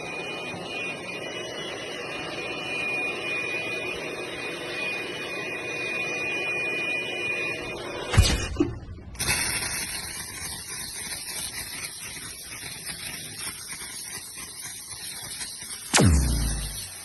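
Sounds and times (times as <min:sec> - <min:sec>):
loud downward sweeping sound: 0:15.9 - 0:17.0.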